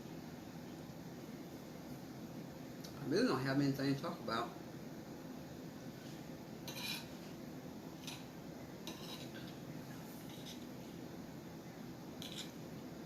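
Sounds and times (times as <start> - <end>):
utensil clinking against a dish: 8.0 - 9.6, 12.2 - 12.6.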